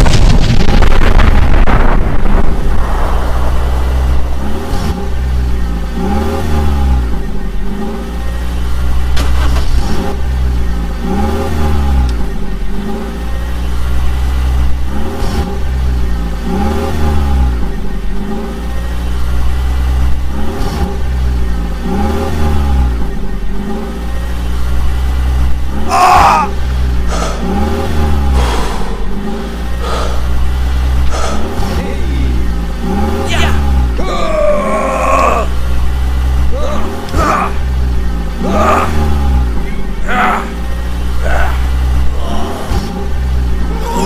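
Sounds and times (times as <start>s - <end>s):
motor revving up and down: 1.3s - 8.2s, 9.3s - 13.1s, 16.3s - 17.6s, 21.7s - 23.0s, 25.0s - 44.0s.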